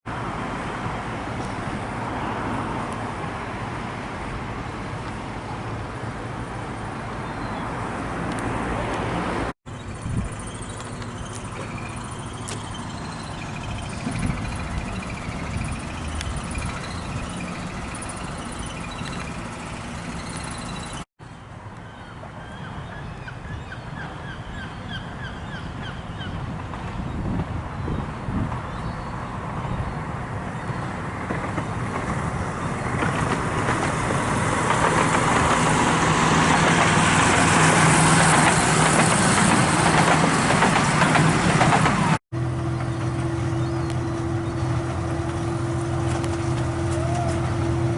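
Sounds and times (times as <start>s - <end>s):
miniature train rumbling: 9.8s - 21.0s, 30.9s - 47.9s.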